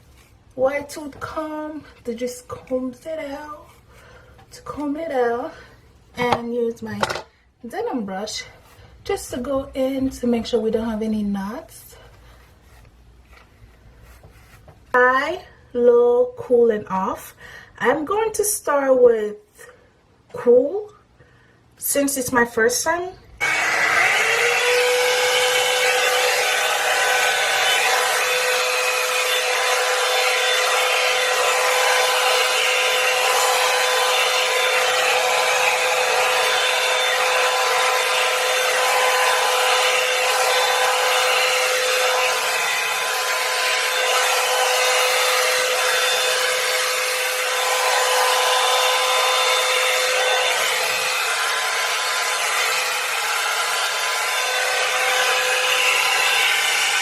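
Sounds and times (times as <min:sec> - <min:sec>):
hair dryer motor whine: 0:23.4 - 0:57.0.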